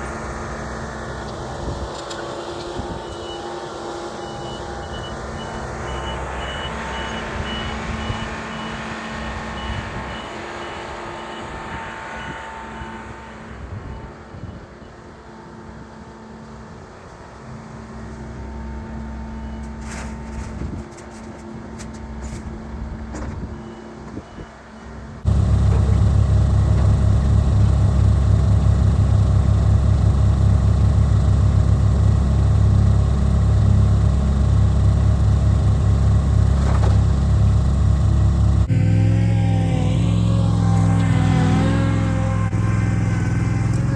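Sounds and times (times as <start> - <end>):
heavy vehicle engines humming: 0.0 - 13.7, 25.2 - 43.9
loud low engine close by: 0.0 - 13.8, 25.2 - 43.9.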